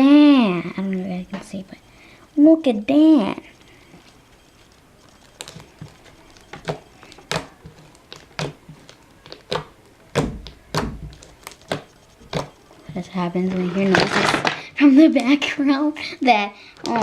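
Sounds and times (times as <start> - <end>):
slime squished by hand: 5.4 - 12.5.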